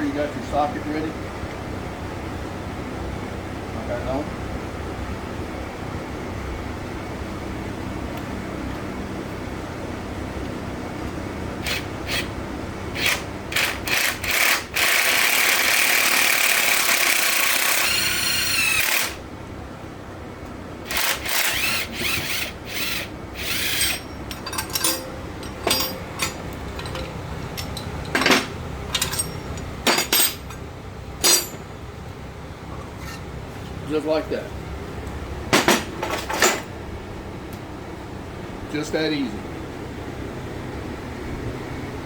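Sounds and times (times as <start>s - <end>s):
power tool driving a socket: 20.9s - 28.2s
sharp metal hits: 23.8s - 30.6s, 31.2s - 31.6s.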